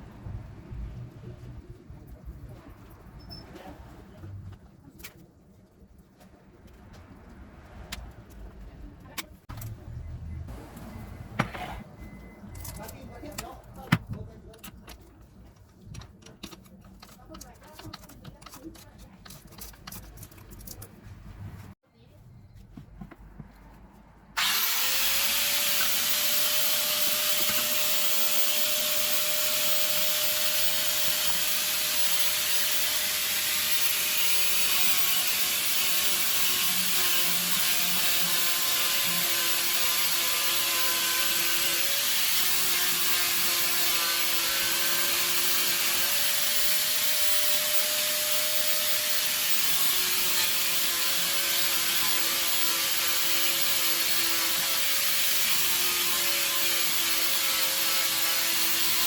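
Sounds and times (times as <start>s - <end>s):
angle grinder sanding: 24.4s - 59.0s.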